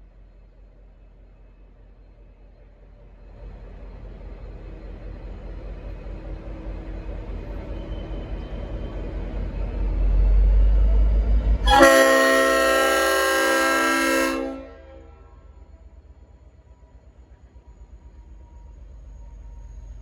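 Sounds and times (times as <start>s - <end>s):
locomotive air horn chord: 11.7s - 15.4s.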